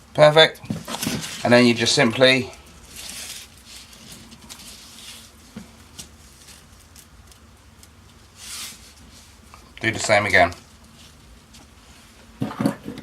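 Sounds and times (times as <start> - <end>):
scraping rustle: 0.7 - 7.1, 8.1 - 9.4.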